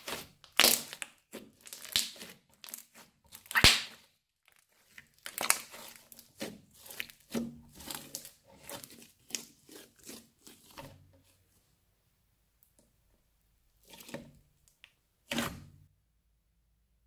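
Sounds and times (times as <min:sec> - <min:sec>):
crunchy slime squished by hand: 0:00.0 - 0:11.3.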